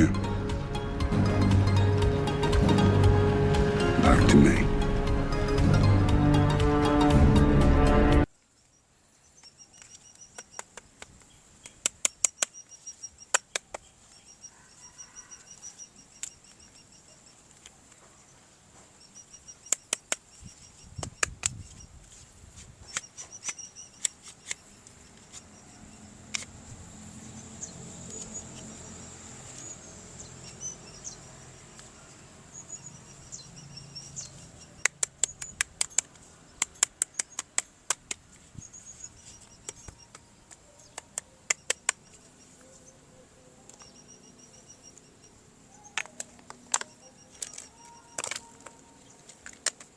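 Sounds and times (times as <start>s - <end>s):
plastic clicks and taps: 34.8s - 38.4s.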